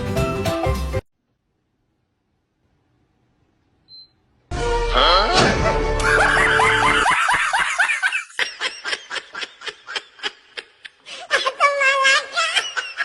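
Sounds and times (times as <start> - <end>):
laughter in rapid bursts: 6.0 - 13.0.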